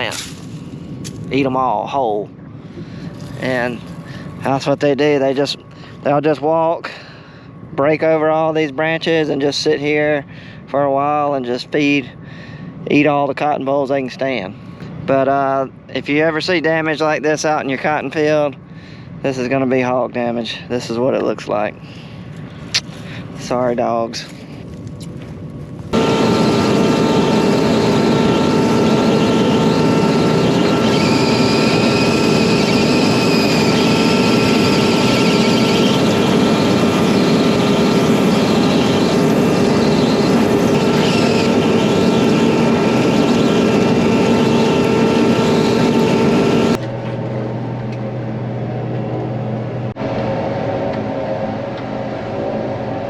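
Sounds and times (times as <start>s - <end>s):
low engine hum: 0.0s - 53.0s
steady whining tones: 0.0s - 53.0s
vehicle engine running loudly: 0.0s - 53.0s.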